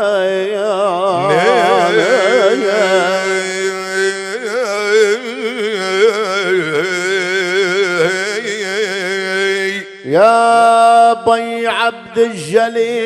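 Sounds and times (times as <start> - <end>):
held drone: 1.2 - 9.0.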